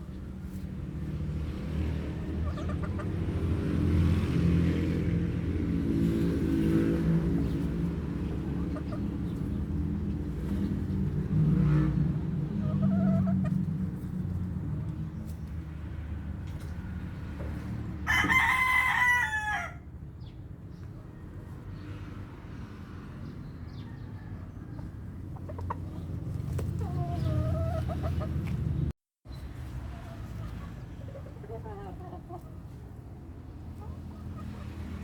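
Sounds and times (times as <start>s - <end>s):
chickens clucking: 0.0s - 4.4s, 7.2s - 15.6s, 16.3s - 18.4s, 23.7s - 35.0s.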